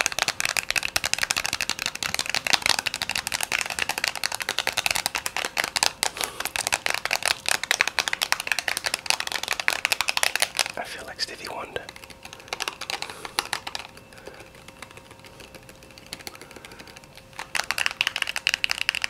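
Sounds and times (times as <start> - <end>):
rapid light tapping clicks: 0.0 - 10.8, 11.7 - 19.0.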